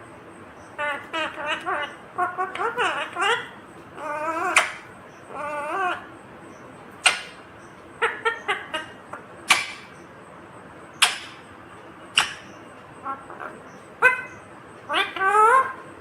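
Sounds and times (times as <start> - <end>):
parrot chirps: 0.8 - 6.1, 7.0 - 7.4, 8.0 - 10.0, 10.9 - 11.5, 12.1 - 15.8
parrot squawking: 0.8 - 6.1, 7.0 - 7.4, 8.0 - 10.0, 11.0 - 11.4, 12.1 - 15.8
parrot wavering call: 0.8 - 6.1, 7.0 - 7.4, 12.2 - 15.8.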